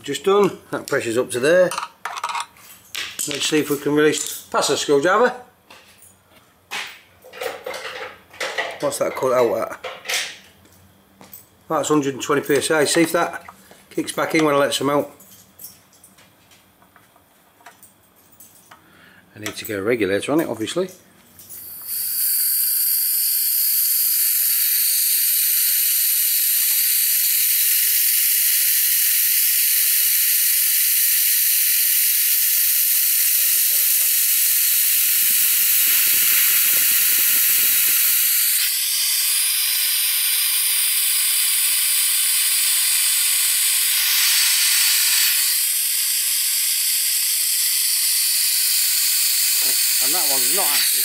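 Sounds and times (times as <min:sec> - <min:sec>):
compressed air hissing: 0:21.6 - 0:51.0.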